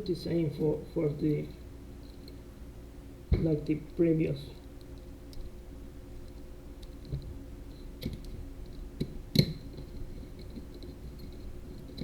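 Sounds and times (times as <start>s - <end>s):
small parts clicking and tapping: 8.0s - 12.0s.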